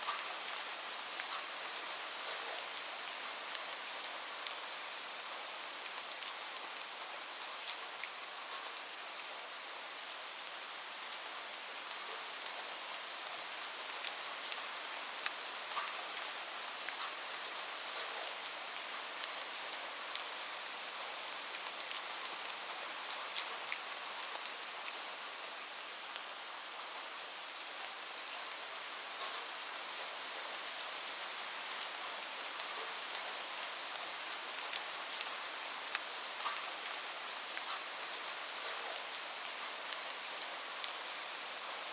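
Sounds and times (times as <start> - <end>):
raindrops ticking on a surface: 0.0 - 27.1, 28.2 - 41.9.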